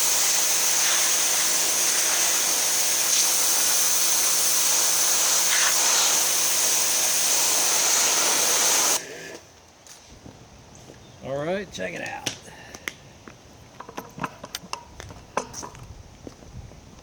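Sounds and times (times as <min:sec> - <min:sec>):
pressure washer motor hum: 0:00.0 - 0:09.4
pressure washer water jet hissing: 0:00.0 - 0:09.4.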